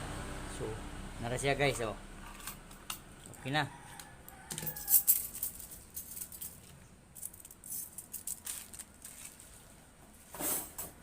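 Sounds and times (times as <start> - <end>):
small lock parts clicking and rattling: 4.0 - 9.0.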